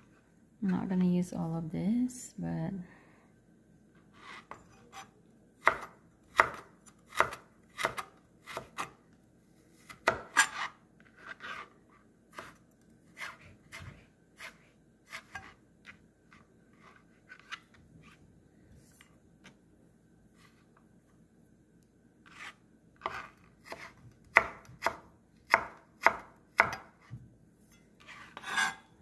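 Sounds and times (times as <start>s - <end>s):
knife chopping on cutting board: 5.6s - 9.0s, 9.8s - 10.7s, 22.3s - 27.2s.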